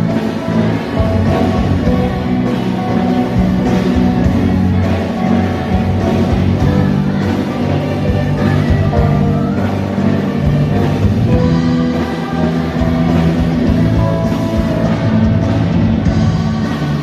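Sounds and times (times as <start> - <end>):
guitar: 0.0 - 17.0
steady drum beat: 0.0 - 17.0.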